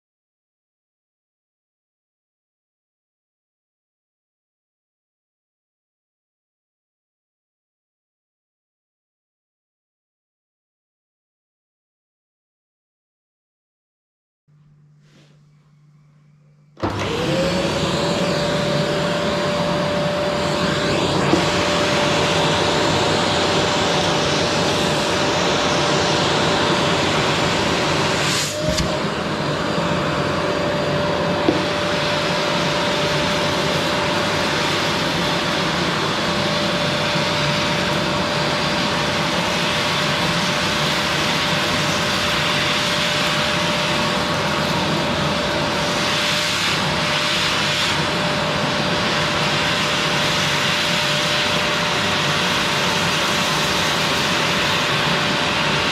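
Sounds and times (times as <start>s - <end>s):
vacuum cleaner motor whine: 14.5s - 55.9s.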